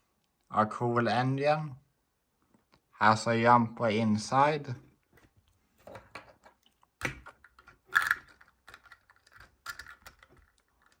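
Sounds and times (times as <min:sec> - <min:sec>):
plastic toy bricks clicking: 0:06.4 - 0:11.0.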